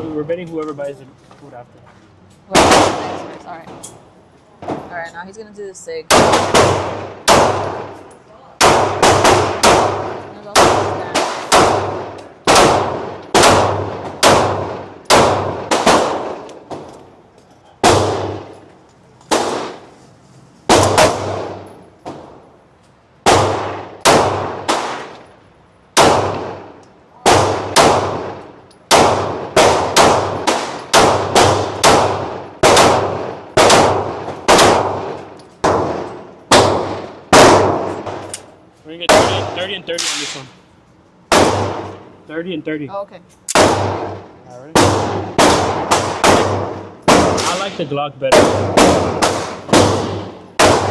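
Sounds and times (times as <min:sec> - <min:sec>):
pistol shots with ringing echo: 0:02.5 - 0:03.8, 0:06.1 - 0:17.0, 0:17.8 - 0:18.6, 0:19.3 - 0:19.9, 0:20.7 - 0:22.4, 0:23.2 - 0:25.3, 0:25.9 - 0:38.3, 0:39.1 - 0:40.5, 0:41.3 - 0:42.1, 0:43.5 - 0:50.9.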